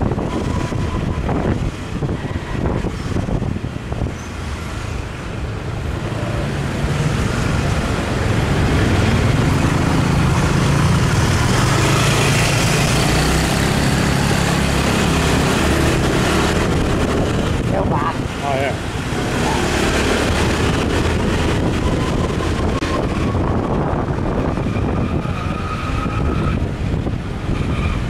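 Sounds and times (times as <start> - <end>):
rushing wind: 0.0 - 28.0.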